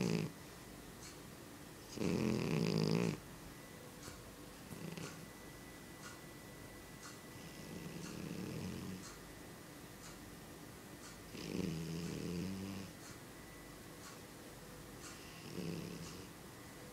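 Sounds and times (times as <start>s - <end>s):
cat snoring: 0.0s - 0.4s, 1.9s - 3.2s, 4.8s - 5.2s, 7.4s - 9.0s, 11.3s - 12.9s, 15.2s - 16.3s.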